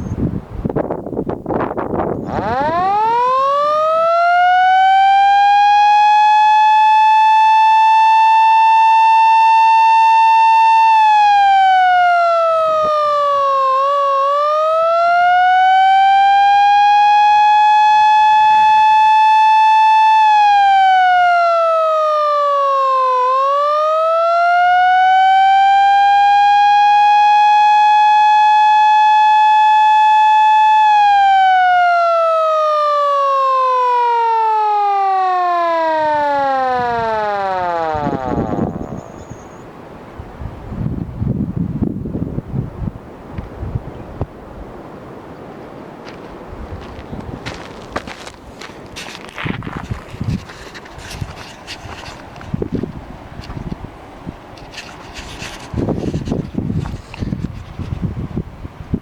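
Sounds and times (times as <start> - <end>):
mechanical fire truck siren: 1.9 - 39.6, 47.4 - 52.2, 54.6 - 57.9.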